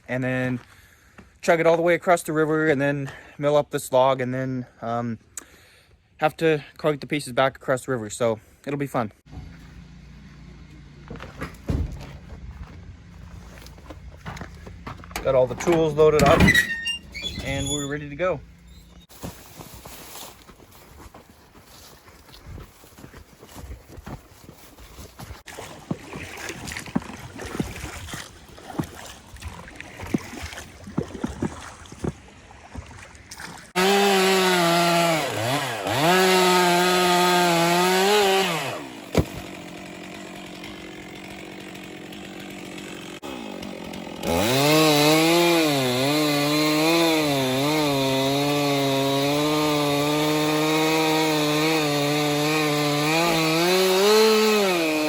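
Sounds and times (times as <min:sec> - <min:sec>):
knocks and clicks of gear handled: 0:13.5 - 0:17.3
chainsaw revving: 0:33.8 - 0:55.0.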